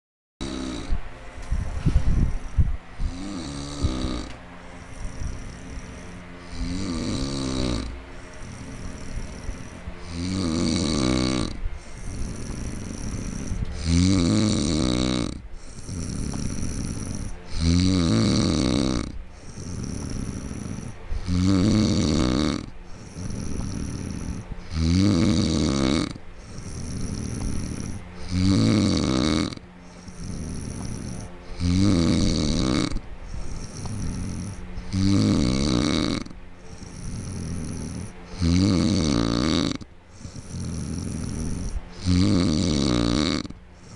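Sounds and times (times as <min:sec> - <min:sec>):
man snoring loudly: 0:00.4 - 0:01.0, 0:02.1 - 0:43.9
soft breathing: 0:00.9 - 0:10.3, 0:11.1 - 0:14.0, 0:14.7 - 0:17.6, 0:19.0 - 0:21.3, 0:22.6 - 0:24.8, 0:26.1 - 0:28.4, 0:29.6 - 0:32.3, 0:32.9 - 0:35.0, 0:36.2 - 0:38.5, 0:39.8 - 0:42.0, 0:43.4 - 0:43.9.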